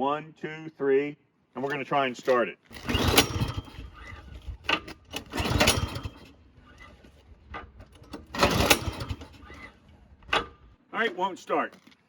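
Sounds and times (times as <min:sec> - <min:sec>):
recoil cord yanked: 0:01.6 - 0:10.8
engine turning over rattling: 0:01.7 - 0:10.8.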